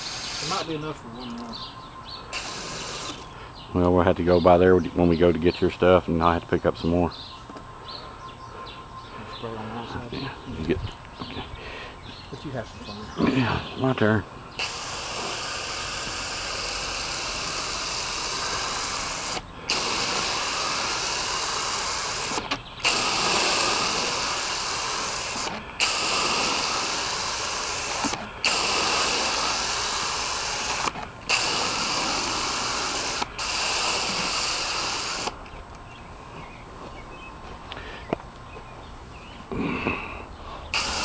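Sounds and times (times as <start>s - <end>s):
spray gun hissing: 0.0s - 0.8s, 2.3s - 3.2s, 14.6s - 35.4s, 40.7s - 41.0s.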